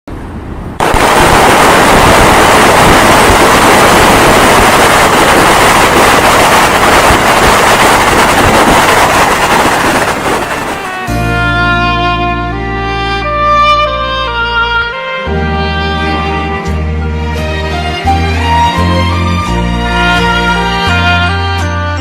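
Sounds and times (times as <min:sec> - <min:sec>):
loud steady rushing noise: 0:00.1 - 0:11.4, 0:17.6 - 0:21.1
music: 0:10.9 - 0:22.0.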